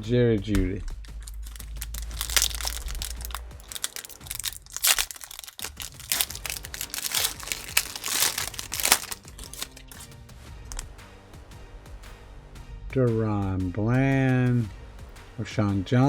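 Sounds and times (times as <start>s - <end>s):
wrapper tearing and crinkling: 1.0s - 10.1s.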